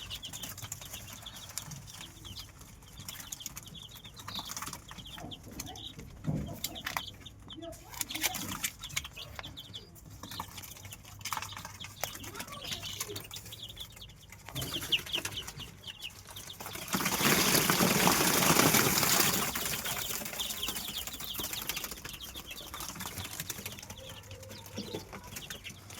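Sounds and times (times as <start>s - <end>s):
chicks peeping: 0.0s - 25.9s
loud rustling: 10.1s - 25.9s.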